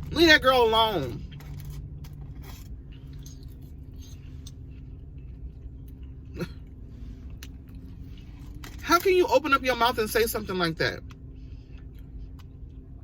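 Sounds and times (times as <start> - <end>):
steady low hum: 0.0 - 13.0
person chewing food: 1.2 - 8.6, 11.0 - 13.0.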